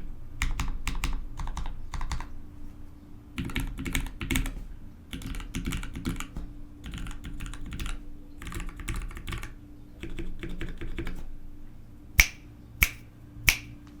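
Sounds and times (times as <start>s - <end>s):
mechanical keyboard typing: 0.4s - 2.3s, 3.4s - 11.2s.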